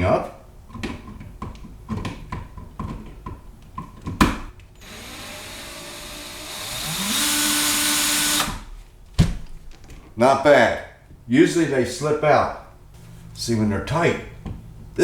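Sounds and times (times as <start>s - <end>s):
driver bit clicking on screw: 4.8s - 8.6s
power drill whining: 4.8s - 8.7s.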